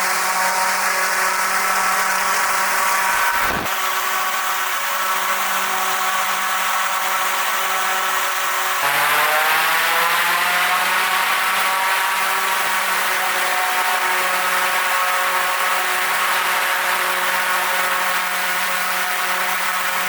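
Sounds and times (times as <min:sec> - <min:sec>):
motor fan humming: 0:00.0 - 0:03.8
rushing blown air: 0:02.1 - 0:03.8.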